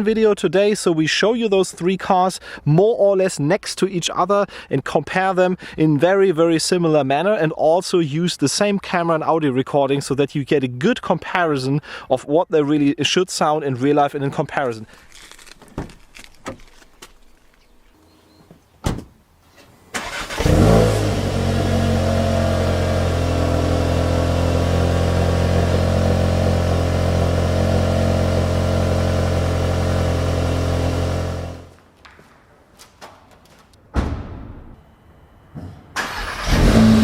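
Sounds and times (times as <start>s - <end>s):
car engine starting and idling: 19.5s - 31.7s, 35.9s - 37.0s.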